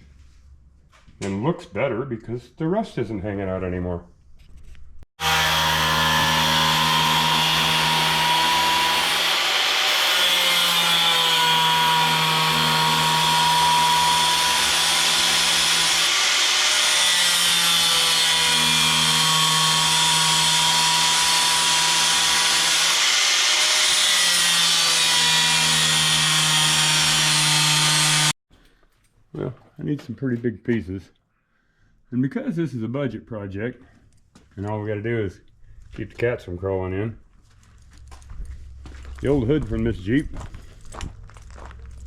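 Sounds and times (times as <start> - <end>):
power tool working sheet metal: 5.2 - 28.4.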